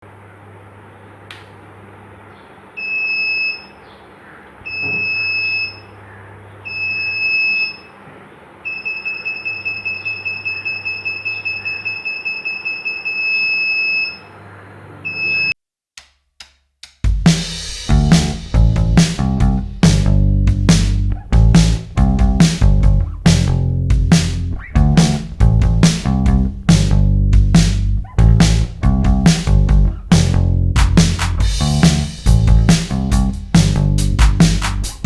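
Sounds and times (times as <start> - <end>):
high piezo buzzer beeping: 2.8 - 3.7, 4.7 - 5.9, 8.7 - 14.3, 15.0 - 15.6.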